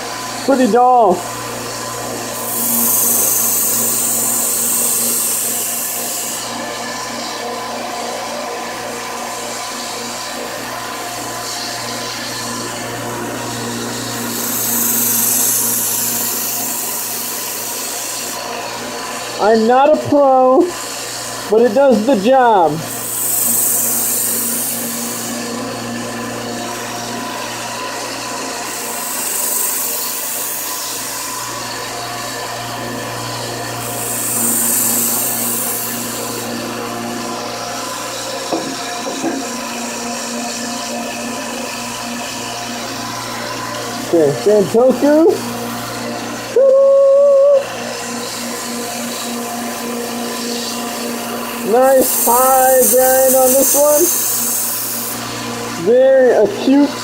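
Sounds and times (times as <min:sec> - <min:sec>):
steady motor hum: 0:00.0 - 0:57.0
knife grinding on abrasive: 0:02.3 - 0:06.6, 0:13.4 - 0:18.5, 0:22.8 - 0:25.5, 0:28.5 - 0:31.8, 0:33.3 - 0:36.6, 0:47.7 - 0:56.9.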